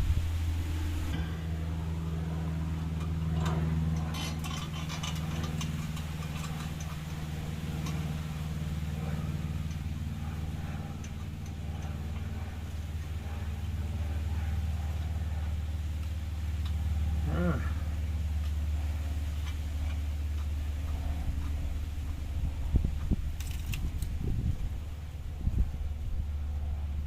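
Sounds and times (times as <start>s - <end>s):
low engine hum: 0.0s - 27.0s.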